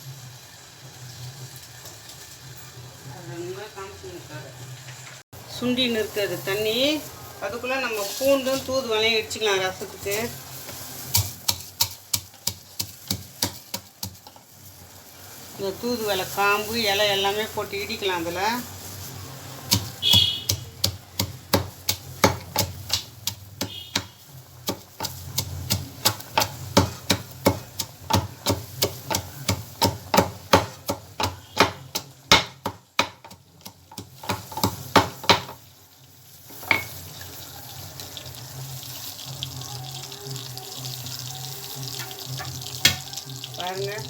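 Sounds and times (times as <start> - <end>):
pestle pounding in a mortar: 11.1 - 14.4, 19.7 - 35.6.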